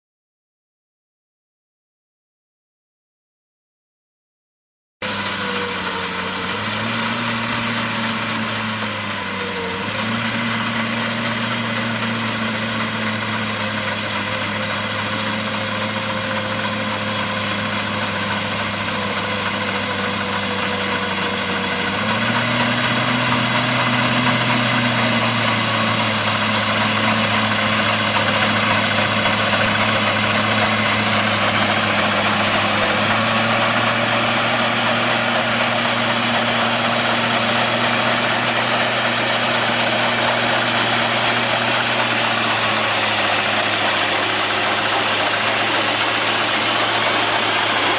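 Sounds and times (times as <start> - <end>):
harvester engine revving: 5.0 - 47.9.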